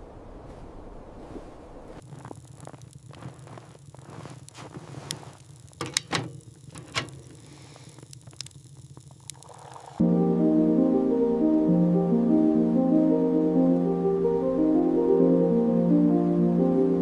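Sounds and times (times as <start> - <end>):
low steady hum: 0.0 - 17.0
sharp clicks and knocks: 5.1 - 9.4
soft keyboard music: 10.0 - 17.0.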